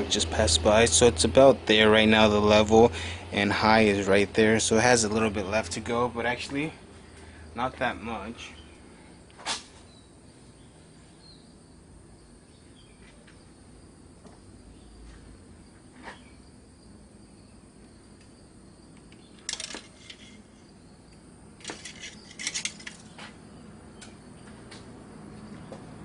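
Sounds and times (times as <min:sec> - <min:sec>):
rattling clicks: 0:19.0 - 0:20.4, 0:21.6 - 0:23.2
small hard objects clattering: 0:19.3 - 0:20.4, 0:21.6 - 0:23.2.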